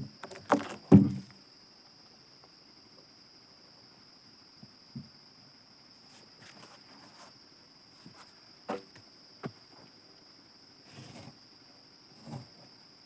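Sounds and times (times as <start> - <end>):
knocks and thuds: 0.0 - 1.3, 8.7 - 9.6
faint high-pitched whine: 0.0 - 13.0.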